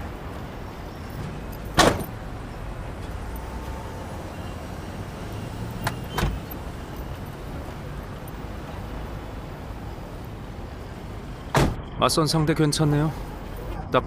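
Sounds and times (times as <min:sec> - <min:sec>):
car rumble: 0:00.0 - 0:12.0
car door thudding shut: 0:01.7 - 0:02.1, 0:11.5 - 0:11.8.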